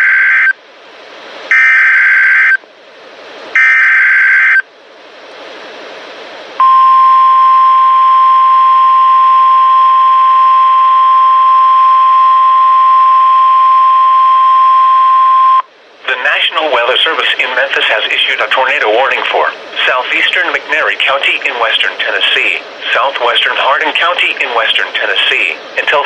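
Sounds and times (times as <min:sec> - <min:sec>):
steady warning alarm tone: 0:01.5 - 0:02.6, 0:03.6 - 0:04.6, 0:06.6 - 0:15.7
radio hiss: 0:15.4 - 0:26.0.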